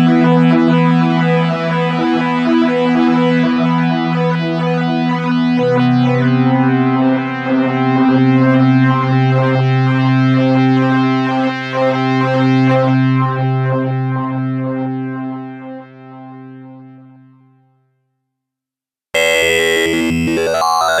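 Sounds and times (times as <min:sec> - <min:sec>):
synthesizer notes: 0:19.2 - 0:21.0.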